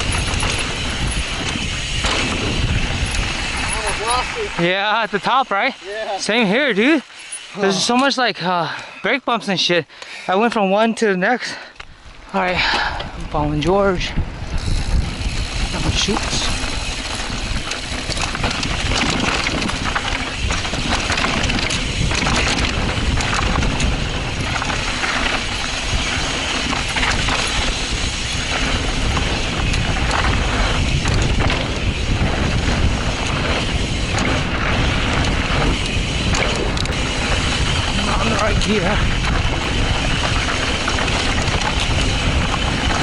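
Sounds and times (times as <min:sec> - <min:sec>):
wind rushing: 0:00.0 - 0:05.8, 0:12.0 - 0:43.0
tyres rolling over dirt and rocks: 0:00.0 - 0:08.4, 0:14.4 - 0:43.0
bike chain and parts rattling: 0:00.0 - 0:09.7, 0:11.4 - 0:43.0.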